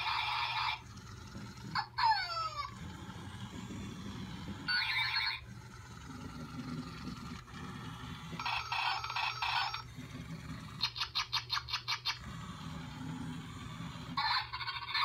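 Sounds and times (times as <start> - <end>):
steady low hum: 0.0 - 14.6
toy electronic ringing tones: 4.7 - 5.4.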